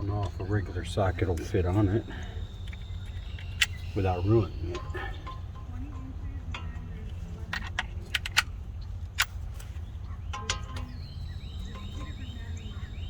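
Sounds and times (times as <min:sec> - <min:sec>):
insects chirping: 0:00.0 - 0:06.5, 0:10.3 - 0:13.0
steady low hum: 0:00.0 - 0:13.0
metal tools clinking: 0:00.2 - 0:12.3.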